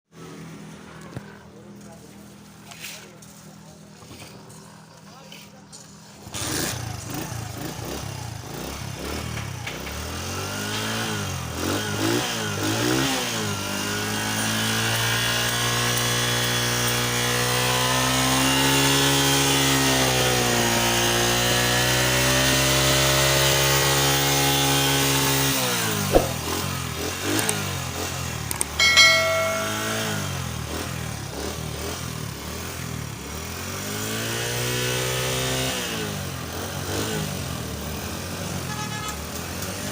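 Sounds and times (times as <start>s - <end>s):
motorcycle engine revving: 6.3s - 9.4s, 10.2s - 15.4s.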